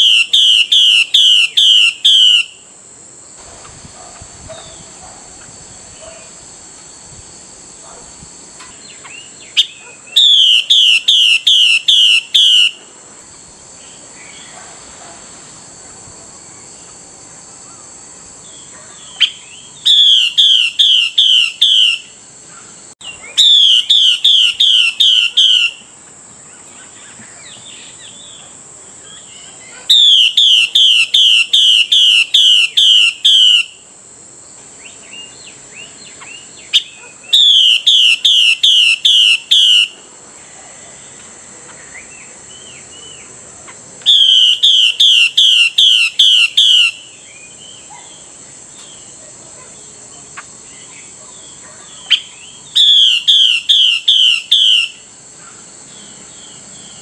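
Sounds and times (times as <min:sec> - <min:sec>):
bird downslurred whistled notes: 0:44.1 - 0:47.9, 0:52.1 - 0:55.0.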